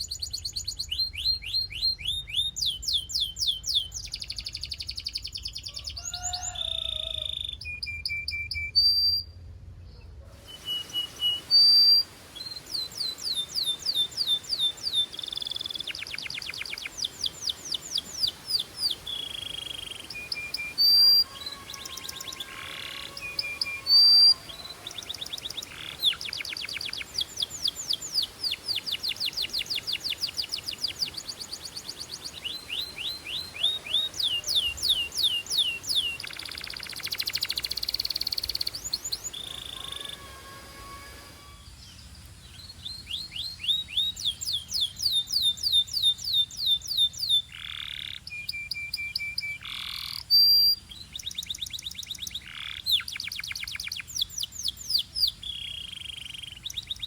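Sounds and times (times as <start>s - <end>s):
upward-swept bird calls: 0.0s - 9.3s, 10.3s - 57.0s
whistled bird note: 10.4s - 42.0s
canary singing trills: 10.4s - 57.0s
buzzy rattling bird phrase: 12.4s - 41.6s.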